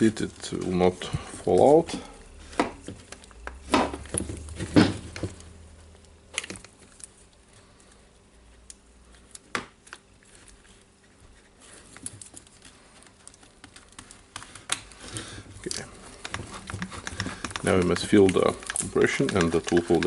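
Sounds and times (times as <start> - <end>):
small parts clicking and knocking: 11.9 - 20.0.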